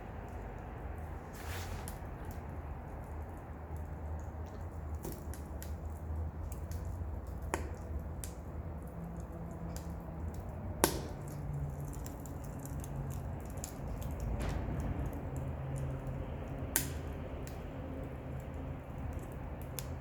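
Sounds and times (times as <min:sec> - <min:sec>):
fire low rumble: 0:00.0 - 0:20.0
wood crackling in stove: 0:00.0 - 0:20.0
sharp fire pops: 0:10.7 - 0:20.0.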